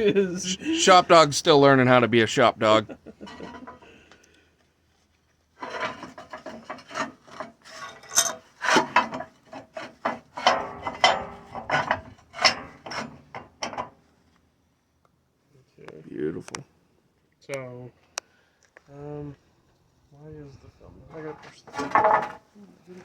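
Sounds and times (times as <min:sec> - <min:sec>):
steel parts scraping: 0:02.6 - 0:03.9, 0:05.6 - 0:13.8, 0:21.2 - 0:22.4.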